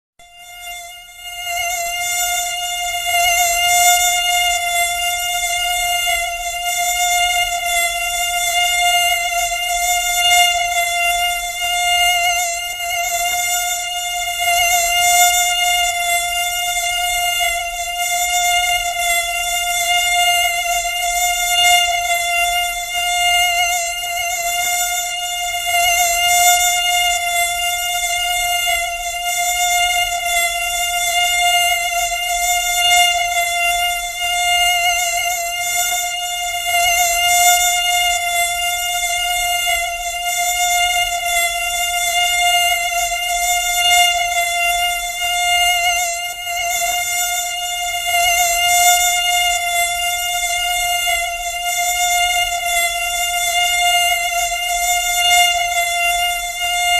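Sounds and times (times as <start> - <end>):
mosquito whine: 0.2 - 56.9.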